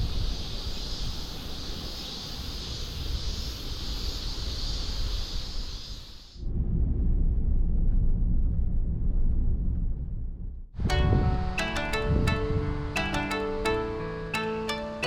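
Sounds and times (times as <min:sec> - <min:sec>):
high-pitched pulsing hiss: 0:00.0 - 0:06.4
low rumble: 0:06.5 - 0:10.7.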